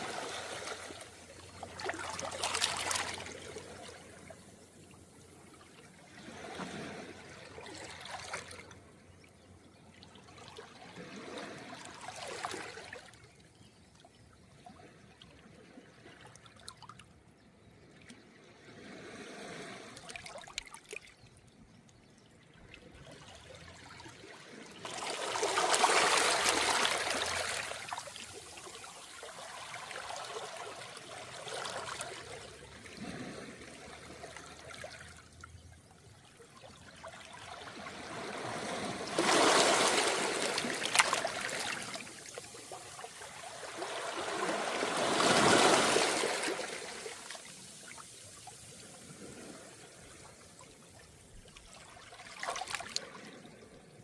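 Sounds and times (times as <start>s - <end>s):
waves washing over pebbles: 24.8s - 34.2s, 37.9s - 50.2s.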